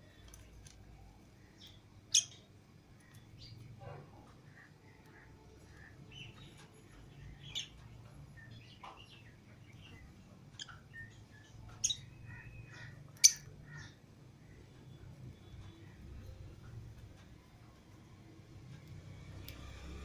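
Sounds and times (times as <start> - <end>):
lovebirds chirping: 0.0 - 17.6
sharp loud bird calls: 10.6 - 14.1.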